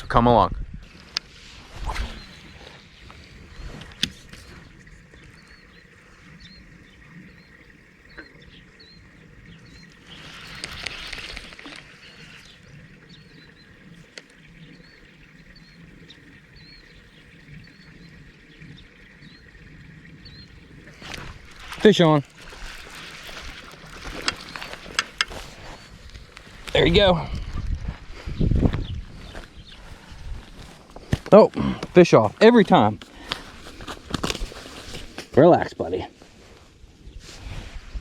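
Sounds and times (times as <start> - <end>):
small bird chirping: 1.9 - 27.7.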